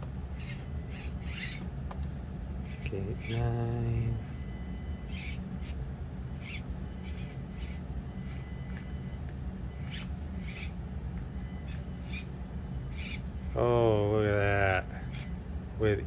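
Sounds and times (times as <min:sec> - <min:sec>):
rasping scrapes: 0:00.0 - 0:03.4, 0:09.8 - 0:10.8, 0:12.9 - 0:13.2
low motor drone: 0:00.0 - 0:16.0.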